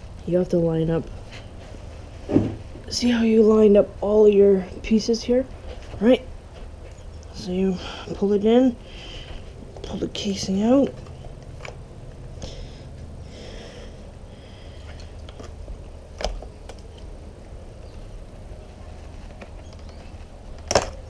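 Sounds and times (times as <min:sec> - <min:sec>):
low steady hum: 0:00.0 - 0:21.0
small thump: 0:02.3 - 0:02.6.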